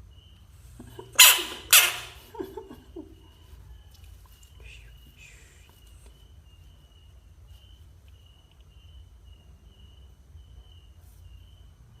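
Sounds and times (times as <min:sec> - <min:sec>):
faint high-pitched animal chirping: 0:01.0 - 0:02.2.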